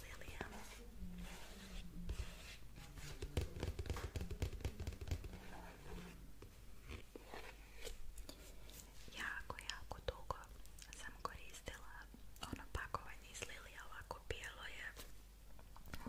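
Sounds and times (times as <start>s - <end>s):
light scrapes: 0.4s - 3.3s
soft tapping on objects: 2.1s - 11.4s.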